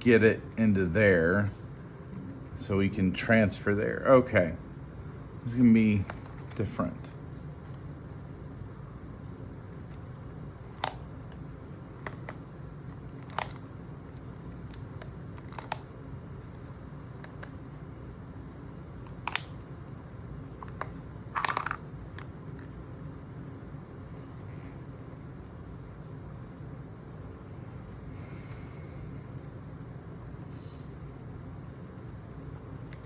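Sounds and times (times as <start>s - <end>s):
steady low hum: 0.0s - 33.0s
puzzle box pieces clicking: 14.8s - 15.8s.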